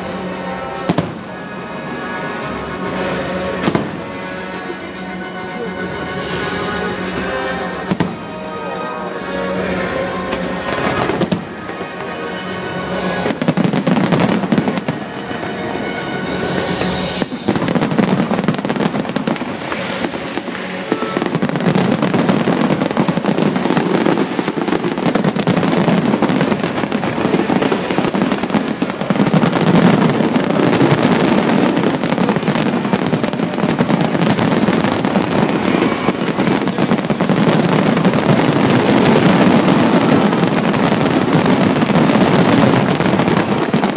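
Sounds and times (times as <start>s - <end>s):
fireworks bangs and crackling: 0.0s - 43.9s
music: 0.0s - 43.9s.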